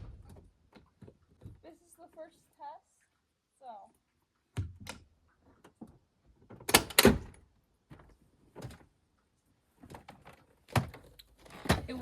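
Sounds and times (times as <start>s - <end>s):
door handle and latch clunking: 6.5s - 7.4s.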